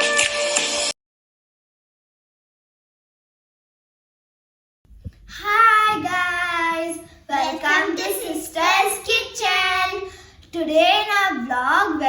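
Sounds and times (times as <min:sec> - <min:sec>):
girl singing: 0:05.3 - 0:10.0.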